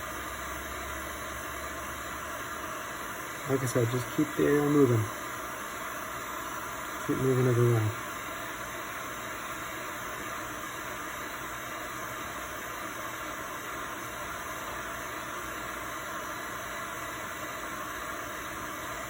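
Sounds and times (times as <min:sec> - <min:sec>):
heat gun hissing: 0:00.0 - 0:19.0.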